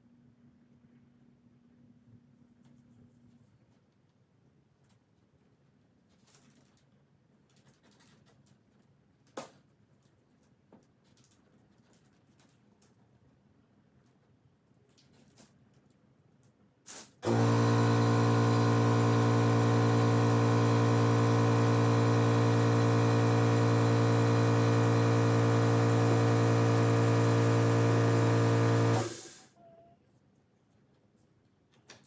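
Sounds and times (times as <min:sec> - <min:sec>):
electric motor humming: 0:17.2 - 0:29.4.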